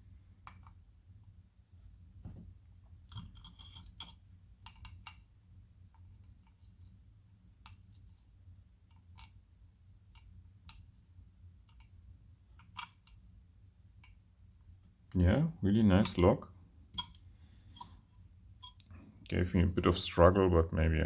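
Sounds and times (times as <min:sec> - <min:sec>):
metal lock pins clinking: 0:03.1 - 0:05.3, 0:16.9 - 0:18.0.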